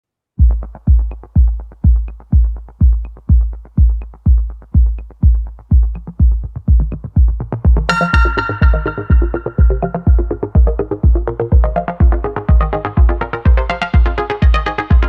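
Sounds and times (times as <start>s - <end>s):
electronic dance music: 0.4s - 15.0s
heavy kick drum: 0.4s - 15.0s
synth chords: 5.9s - 15.0s
cymbal crash: 7.9s - 10.4s.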